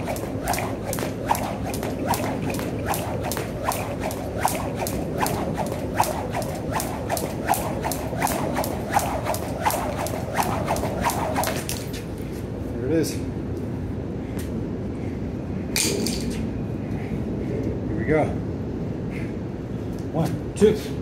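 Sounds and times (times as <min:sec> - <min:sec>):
jump rope slapping floor: 0:00.0 - 0:12.0.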